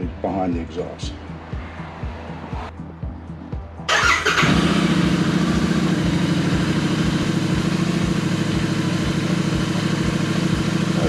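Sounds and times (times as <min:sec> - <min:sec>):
motorcycle engine idling: 0:03.9 - 0:11.0
motorcycle engine starting: 0:03.9 - 0:11.0.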